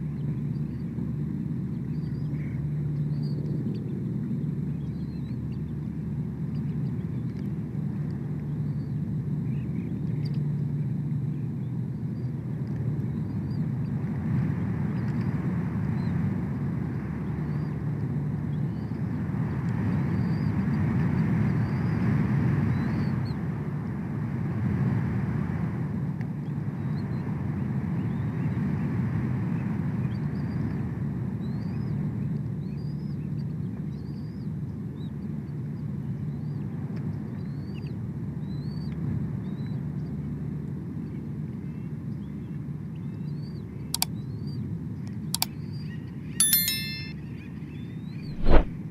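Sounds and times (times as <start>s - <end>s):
low rumble with hiss: 0.0s - 19.6s.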